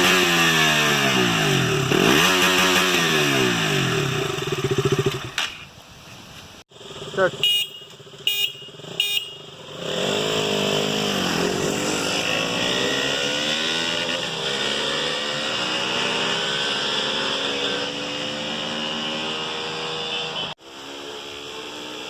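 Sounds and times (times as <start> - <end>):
motorcycle engine revving: 0.0 - 5.5, 6.7 - 22.0
short high beep: 7.4 - 9.4.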